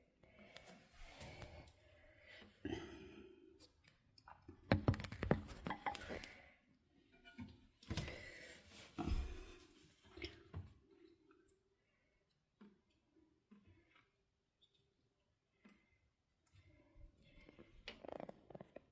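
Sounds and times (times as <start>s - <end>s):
clicks and knocks of plastic parts: 4.6s - 6.2s.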